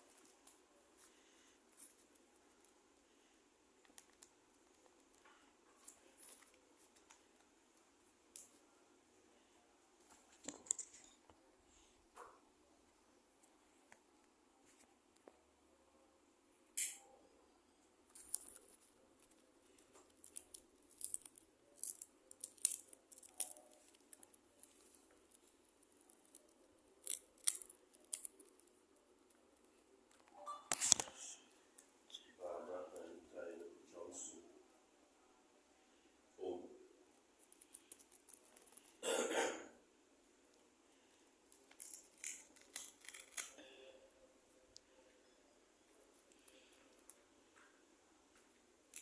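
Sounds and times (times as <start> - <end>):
faint clicks and rustles: 0.0 - 8.7, 9.4 - 12.4
paper crinkling: 18.1 - 31.5, 41.5 - 43.6
man coughing: 39.0 - 39.8.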